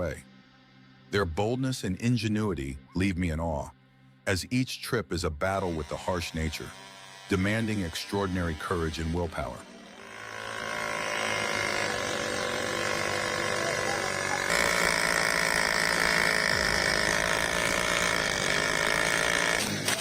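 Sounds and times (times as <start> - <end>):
small motorcycle engine whining: 5.4 - 20.0.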